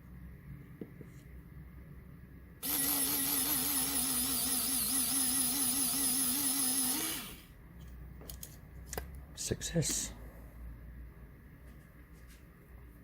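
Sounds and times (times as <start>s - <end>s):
small motor whining: 2.6s - 7.5s.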